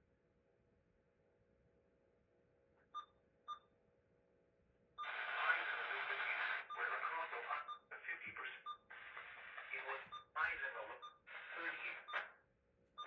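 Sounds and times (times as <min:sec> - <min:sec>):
hissy radio broadcast: 0:05.0 - 0:12.2.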